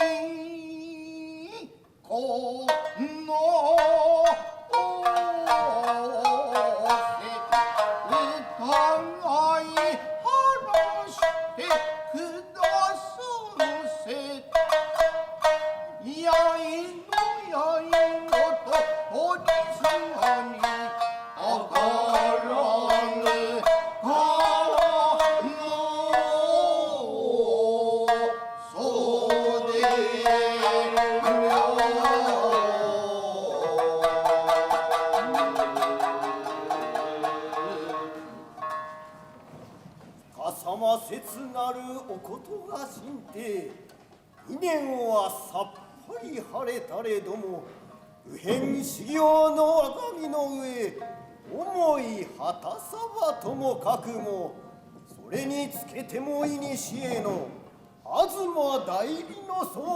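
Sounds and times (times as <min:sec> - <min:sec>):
shamisen plucked notes: 0:02.7 - 0:27.3, 0:28.0 - 0:39.8, 0:50.8 - 0:51.6.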